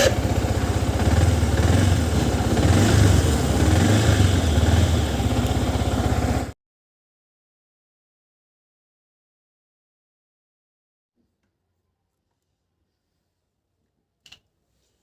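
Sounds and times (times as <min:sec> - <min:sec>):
motorcycle engine idling: 0:00.0 - 0:06.5.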